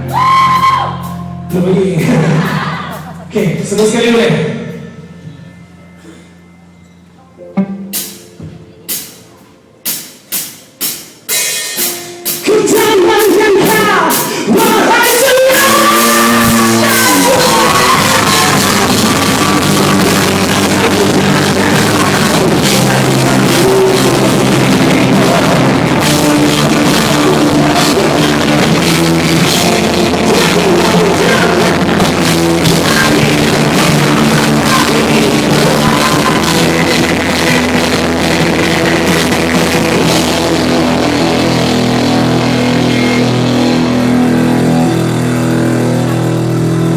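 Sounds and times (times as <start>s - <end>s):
rock band playing live: 0.0s - 46.9s
loud band hits: 9.9s - 46.9s.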